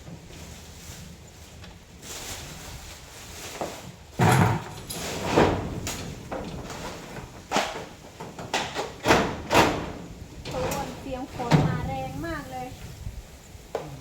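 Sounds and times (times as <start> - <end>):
knocks and clunks: 4.2 - 12.5.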